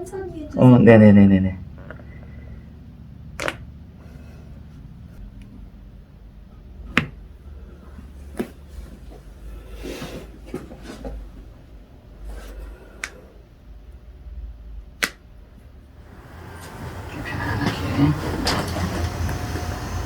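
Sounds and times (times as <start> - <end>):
soft rustling: 7.5 - 13.0.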